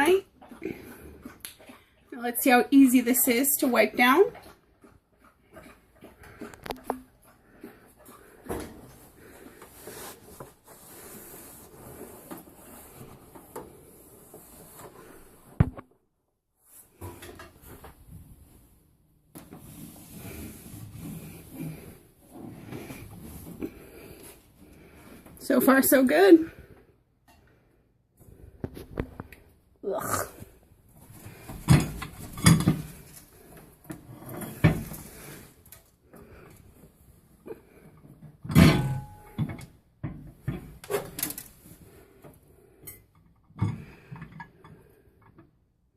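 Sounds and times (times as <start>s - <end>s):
rubbing and scraping: 5.4s - 15.5s, 19.4s - 25.2s.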